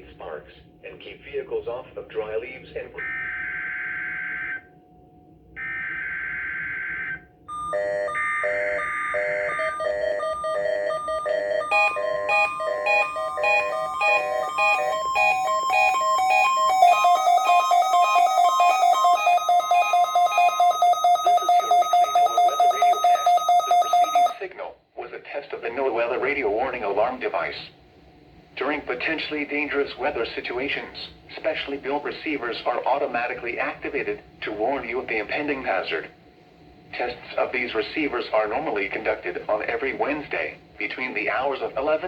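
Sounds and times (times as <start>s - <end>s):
faint broadcast voice: 0.0s - 3.1s, 36.9s - 42.0s
electronic alert beeping: 7.5s - 24.4s.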